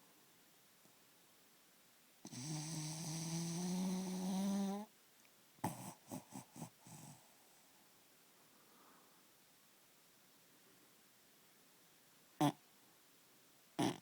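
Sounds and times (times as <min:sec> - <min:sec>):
dog snoring: 0:02.2 - 0:04.9, 0:05.6 - 0:07.6, 0:12.4 - 0:12.6, 0:13.8 - 0:14.0
dog snorting: 0:05.6 - 0:07.2, 0:13.8 - 0:14.0.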